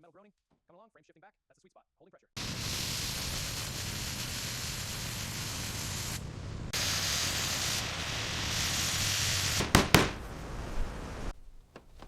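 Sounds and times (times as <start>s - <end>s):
high-pressure spray hissing: 2.4s - 10.4s.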